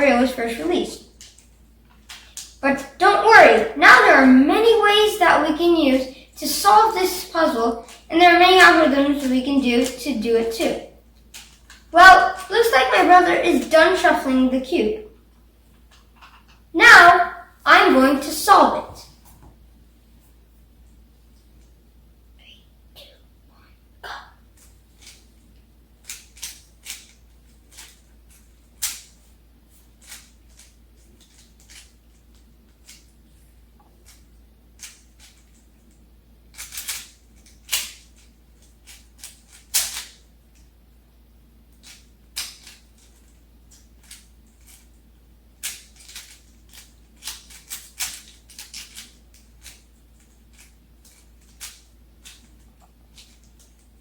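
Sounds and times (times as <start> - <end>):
plastic puzzle cube clicking: 26.0 - 29.1, 30.0 - 31.9, 36.6 - 40.2, 45.6 - 52.6.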